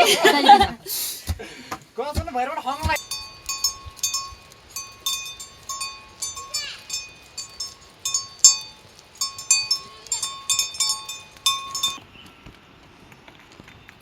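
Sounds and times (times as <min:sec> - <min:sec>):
small metal bell ringing: 0:03.0 - 0:12.0.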